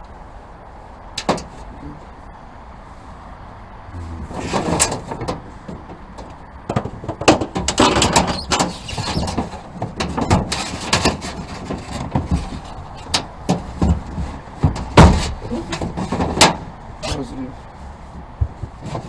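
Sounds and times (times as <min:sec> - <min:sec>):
cables knocking and scraping in metal box: 0:06.6 - 0:16.7.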